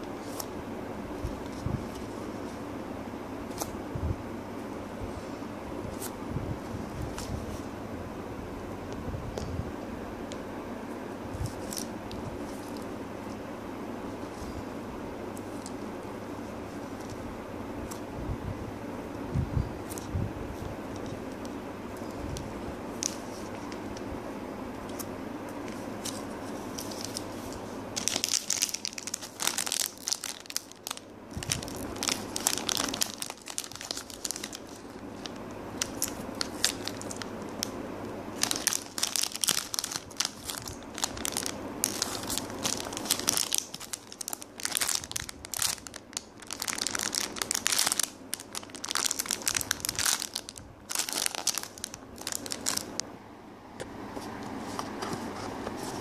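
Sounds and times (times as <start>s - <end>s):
plastic packaging crinkling: 20.9s - 24.0s, 24.9s - 53.0s.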